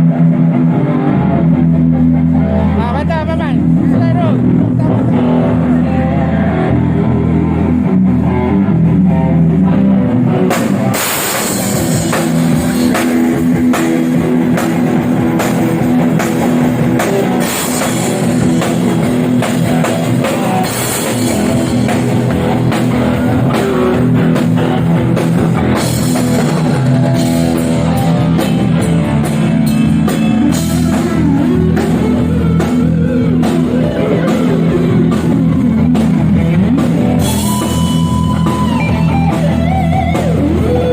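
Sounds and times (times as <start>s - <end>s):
electric guitar and bass chord: 0.0s - 40.9s
drum kit with cymbal crashes: 10.5s - 40.9s.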